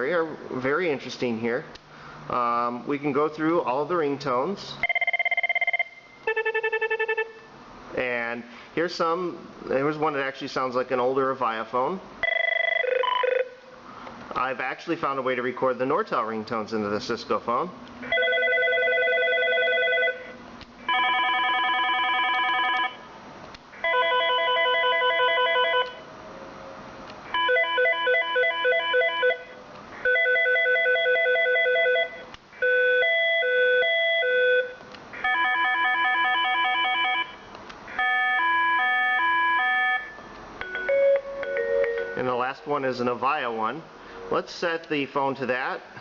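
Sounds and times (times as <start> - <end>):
phone ringtones through speaker: 4.8 - 7.5, 12.2 - 13.6, 27.4 - 37.4, 38.0 - 42.2.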